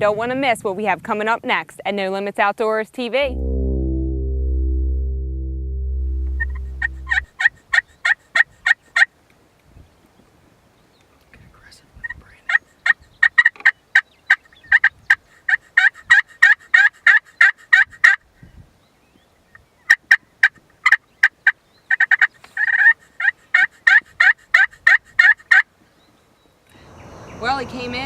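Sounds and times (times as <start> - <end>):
turkey yelping: 15.5 - 18.2, 20.8 - 25.6.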